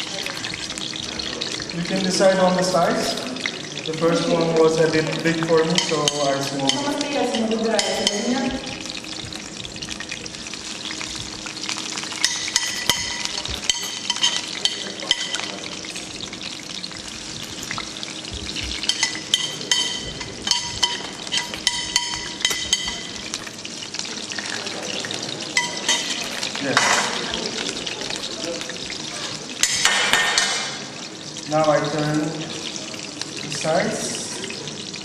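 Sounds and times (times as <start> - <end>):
pancakes sizzling in oil: 0.0 - 35.0
metal spoon clinking on pan: 5.7 - 8.3, 12.2 - 15.6, 18.8 - 23.3, 25.6 - 27.1, 29.6 - 30.8.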